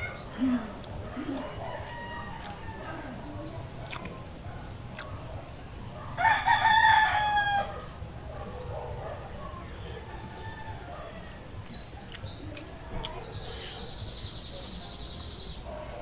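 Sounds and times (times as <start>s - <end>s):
rooster crowing: 1.1s - 3.3s, 6.2s - 7.9s.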